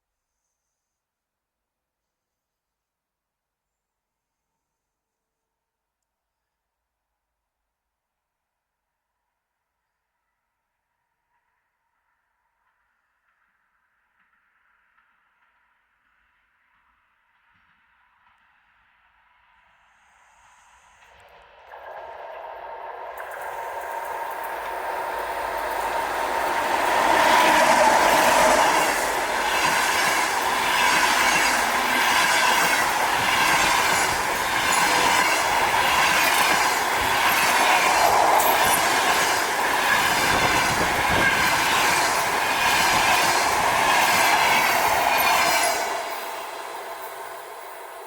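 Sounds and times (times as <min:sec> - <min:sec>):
train rolling noise: 0:21.0 - 0:48.0
train wheels clicking over rail joints: 0:21.7 - 0:48.0.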